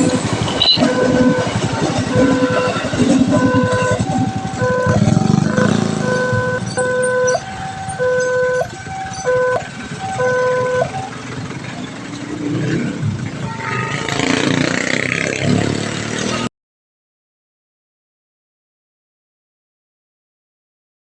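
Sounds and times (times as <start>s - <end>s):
level-crossing two-tone chime: 0.0s - 11.1s
low vehicle rumble: 0.0s - 16.5s.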